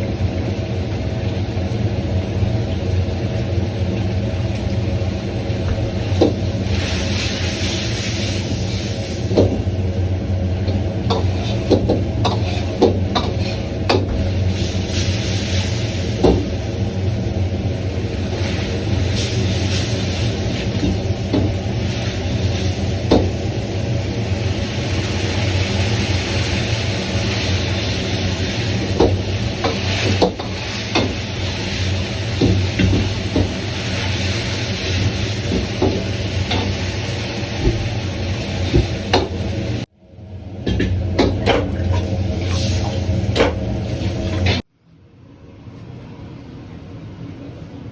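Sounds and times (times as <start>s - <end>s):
food sizzling in a wok: 0.0s - 39.9s, 42.0s - 44.6s
gas burner roar: 0.0s - 44.7s
ladle knocking and scraping wok: 10.6s - 14.3s.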